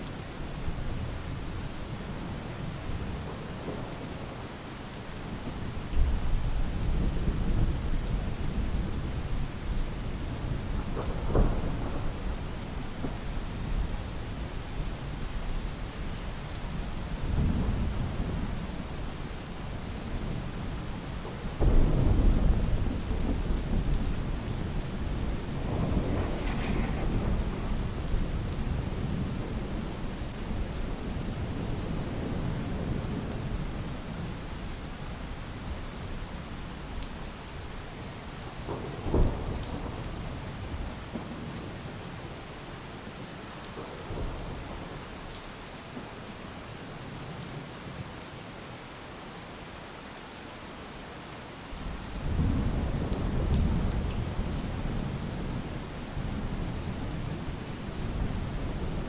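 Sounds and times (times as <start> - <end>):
steady rain: 0.0 - 59.0
thunder rumbling and cracking: 5.4 - 14.5, 21.1 - 34.3, 38.6 - 41.9, 51.8 - 59.0.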